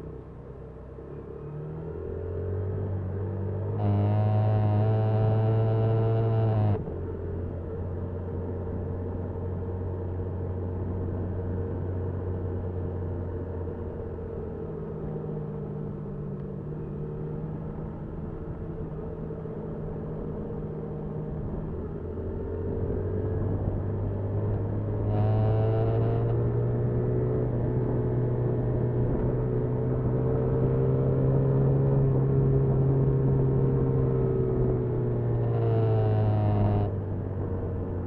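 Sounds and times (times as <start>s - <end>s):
motorcycle engine: 2.7s - 9.3s, 16.8s - 38.0s.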